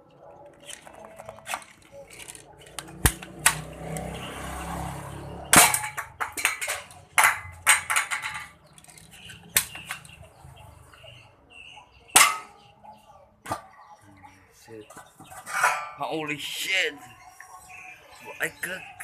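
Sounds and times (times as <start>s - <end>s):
clicks and rattles: 0.4s - 4.1s, 5.5s - 10.2s.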